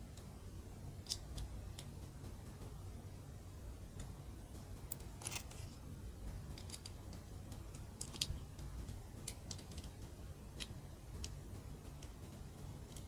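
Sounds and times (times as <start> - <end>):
plastic bricks clicking: 7.7 - 8.4.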